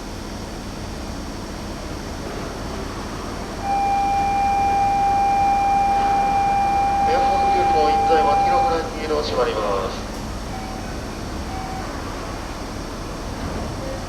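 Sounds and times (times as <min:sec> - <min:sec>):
train humming: 0:00.0 - 0:14.0
electronic departure tone: 0:03.6 - 0:09.1, 0:10.5 - 0:12.2.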